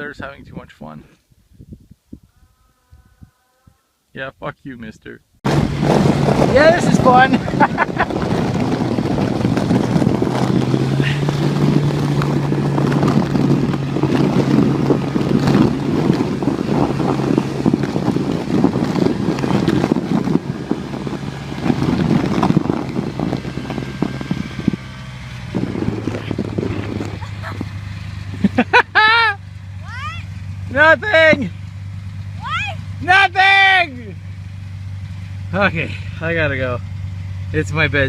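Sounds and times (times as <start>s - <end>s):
wind noise on microphone: 0.0s - 3.9s, 5.5s - 29.0s
snowmobile engine running: 5.5s - 38.0s.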